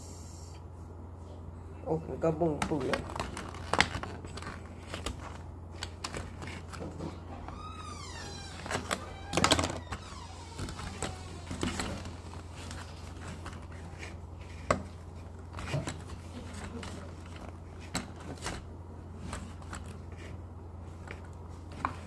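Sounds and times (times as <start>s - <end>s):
steady low hum: 0.0s - 22.0s
plastic squeak: 7.4s - 12.2s.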